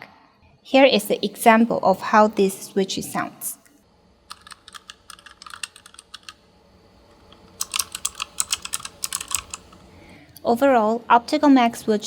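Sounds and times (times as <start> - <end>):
keyboard switches clicking: 7.3 - 9.8.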